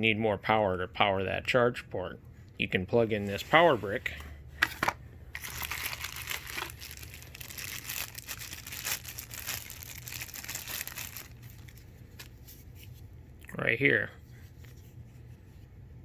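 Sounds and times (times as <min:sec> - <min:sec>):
plastic packaging crinkling: 0:04.7 - 0:12.6.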